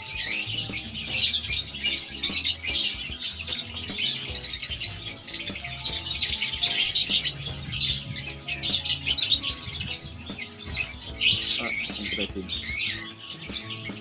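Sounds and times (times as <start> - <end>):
music playing: 0.0 - 14.0
small birds chirping: 0.0 - 14.0.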